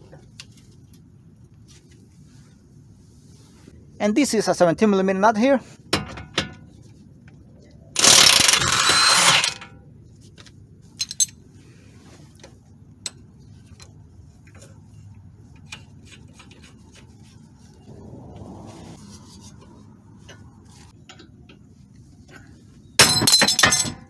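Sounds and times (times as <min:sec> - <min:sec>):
ratchet wrench clicking: 0:08.0 - 0:09.6
tools and metal parts tapping: 0:08.0 - 0:09.7, 0:11.0 - 0:11.4, 0:23.0 - 0:24.0.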